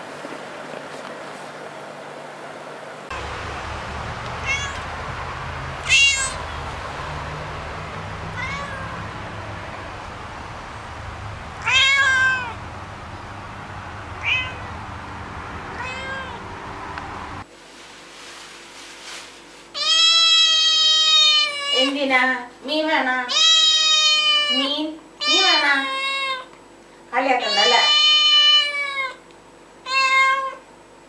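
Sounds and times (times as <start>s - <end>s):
low background rumble: 3.1s - 17.5s
cat meowing: 4.1s - 10.0s, 11.0s - 12.7s, 14.1s - 14.9s, 15.7s - 16.6s, 19.8s - 21.9s, 23.3s - 26.5s, 27.4s - 29.2s, 29.8s - 30.6s.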